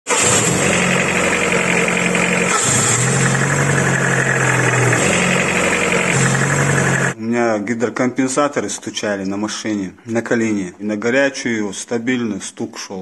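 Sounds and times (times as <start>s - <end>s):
car engine idling: 0.1s - 7.2s.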